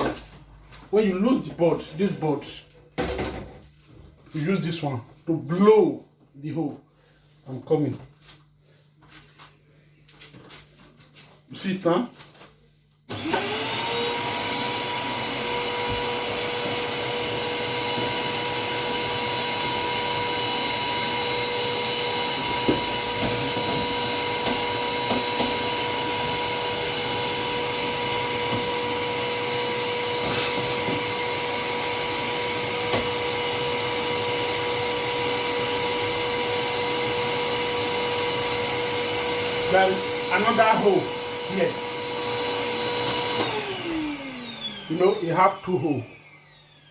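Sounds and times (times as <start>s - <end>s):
vacuum cleaner motor whine: 13.1s - 46.9s.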